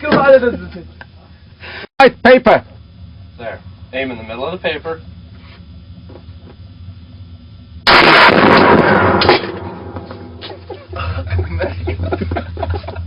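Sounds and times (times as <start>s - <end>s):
loud distorted gunshot: 7.8s - 10.4s.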